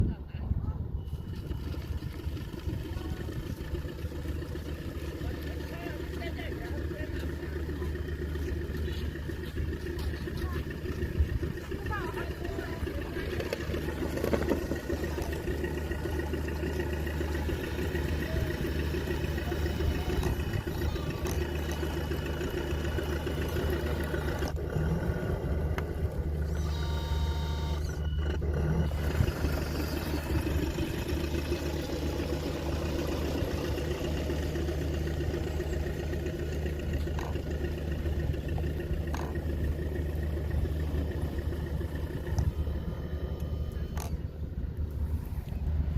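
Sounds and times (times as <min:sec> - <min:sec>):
bulldozer engine running: 0:00.0 - 0:45.9
brief high-pitched tone: 0:19.6 - 0:21.9, 0:26.5 - 0:28.3.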